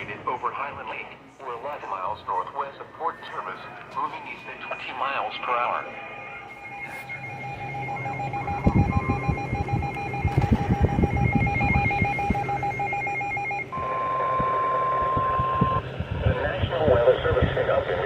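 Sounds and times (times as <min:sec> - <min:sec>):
rapid electronic alert beeping: 0:04.1 - 0:15.8
steady alert tone: 0:04.2 - 0:15.8.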